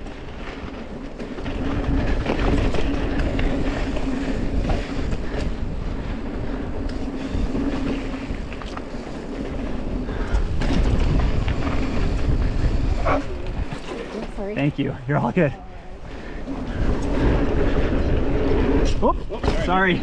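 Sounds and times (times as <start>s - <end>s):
bike knocks and rattles: 0.0s - 14.3s
bike tyres rolling over dirt: 0.0s - 20.0s
wind on microphone: 0.0s - 20.0s.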